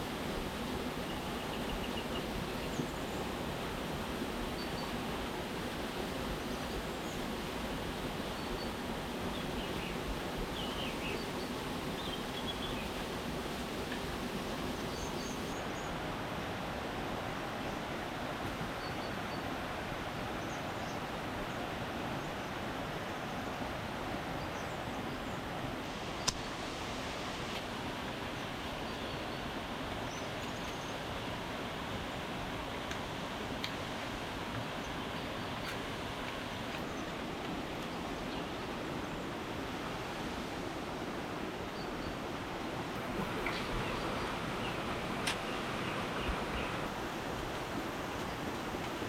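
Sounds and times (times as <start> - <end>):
forest background noise: 0.0 - 49.0
forest ambience rushing: 41.8 - 49.0.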